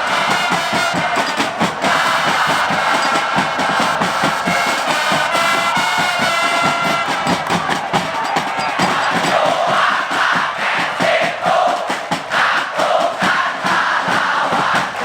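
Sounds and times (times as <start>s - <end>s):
crowd singing a chant: 0.0s - 15.0s
pounding drums: 0.0s - 15.0s.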